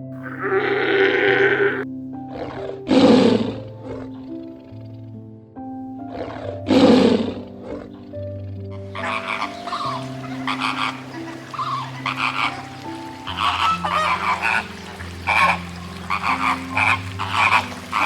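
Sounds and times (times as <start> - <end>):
soft background music: 0.0 - 18.0
tiger roaring: 0.1 - 4.2, 6.1 - 8.0.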